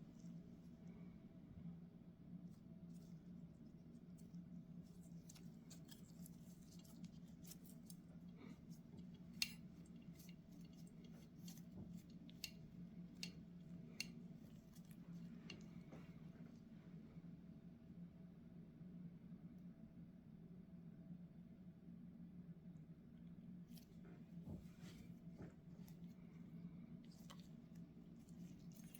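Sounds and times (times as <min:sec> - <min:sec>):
steady low hum: 0:00.0 - 0:20.6.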